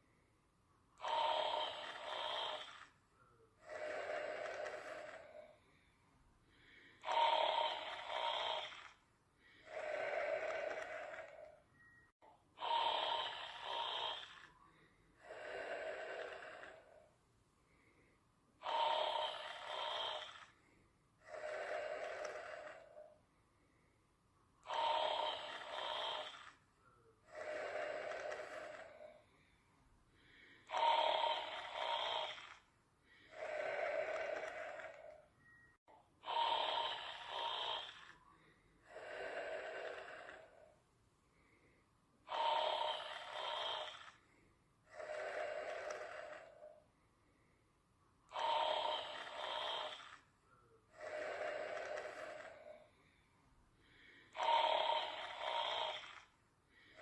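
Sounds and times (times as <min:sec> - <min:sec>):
snoring: 0:01.0 - 0:03.0, 0:03.6 - 0:05.6, 0:06.6 - 0:11.6, 0:12.6 - 0:17.1, 0:18.6 - 0:23.2, 0:24.6 - 0:26.6, 0:27.2 - 0:29.2, 0:30.2 - 0:35.3, 0:36.2 - 0:40.8, 0:42.2 - 0:46.8, 0:48.3 - 0:50.3, 0:50.9 - 0:53.2, 0:53.9 - 0:57.0.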